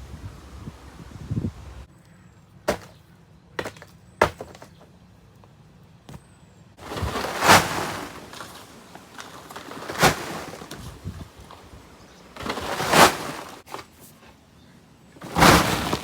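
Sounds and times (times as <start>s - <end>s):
sharp knocks and thuds: 2.7s - 3.0s, 3.6s - 4.8s
scraping rush: 6.8s - 14.0s, 15.2s - 16.0s.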